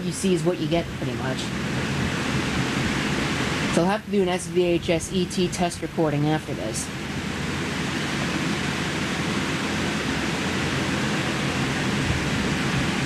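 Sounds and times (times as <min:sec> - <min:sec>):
low hum: 0:00.0 - 0:13.0
steady hiss: 0:00.0 - 0:13.0.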